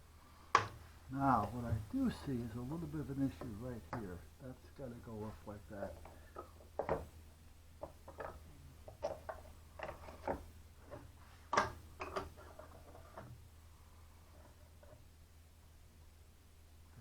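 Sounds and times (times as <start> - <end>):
steady low hum: 0.0 - 17.0
light taps and clicks of objects: 0.5 - 2.5, 5.2 - 7.2, 7.8 - 13.4.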